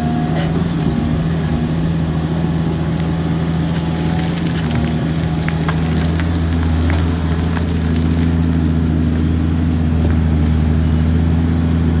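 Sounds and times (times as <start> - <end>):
diesel engine droning: 0.0 - 12.0
faint clicks and crackles: 3.7 - 8.6.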